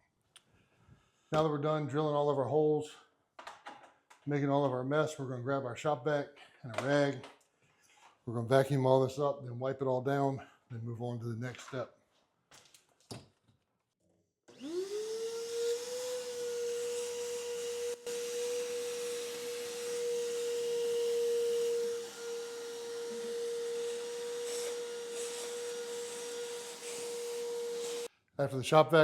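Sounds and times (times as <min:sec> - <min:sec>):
shop vac motor whine: 0:14.5 - 0:28.1.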